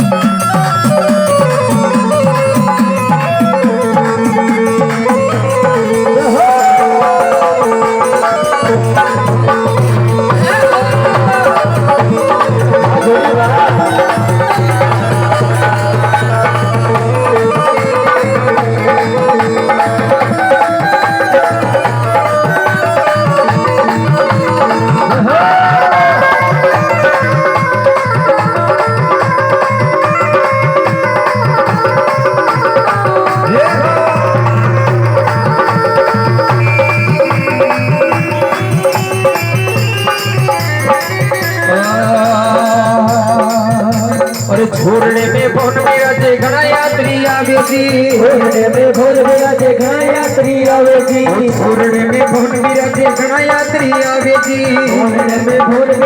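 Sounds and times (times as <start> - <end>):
steady drum rhythm: 0.0 - 56.0.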